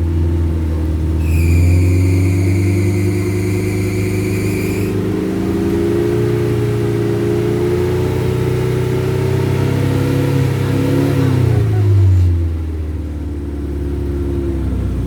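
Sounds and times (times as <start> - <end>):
off-road vehicle engine revving: 0.0 - 15.0.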